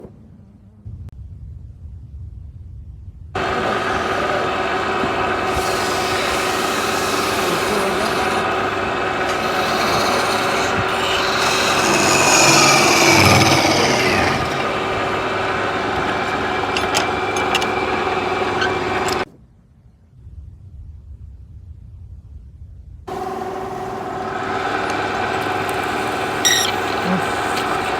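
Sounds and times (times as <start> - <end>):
tool scraping spinning wood: 3.4 - 19.2, 23.1 - 27.9
wood lathe motor hum: 3.4 - 19.2, 23.1 - 27.9.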